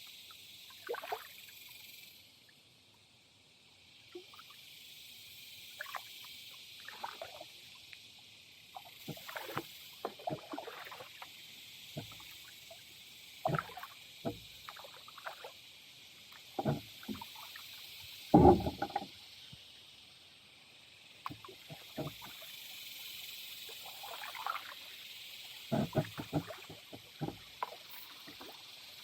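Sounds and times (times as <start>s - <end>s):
steady hiss: 0.0s - 29.0s
paddle splashes: 0.8s - 1.3s, 6.8s - 7.4s, 8.8s - 11.3s, 12.0s - 12.4s, 13.4s - 15.5s, 16.4s - 17.7s, 18.3s - 19.2s, 21.2s - 22.5s, 23.8s - 24.9s, 25.7s - 28.6s
paddle knocking on plastic hull: 13.5s - 14.4s, 16.6s - 17.2s, 18.3s - 19.1s, 25.7s - 27.4s.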